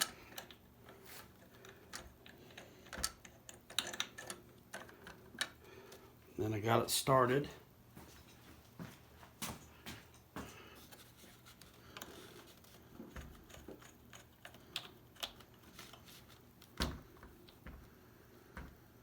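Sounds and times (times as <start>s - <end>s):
screwdriver clicks and scrapes: 10.9s - 16.8s.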